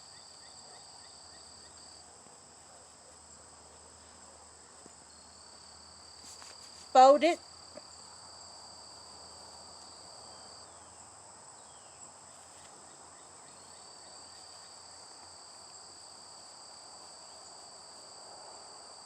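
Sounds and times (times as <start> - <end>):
lower insect trill: 0.0 - 19.0
high-pitched insect trill: 5.1 - 18.2.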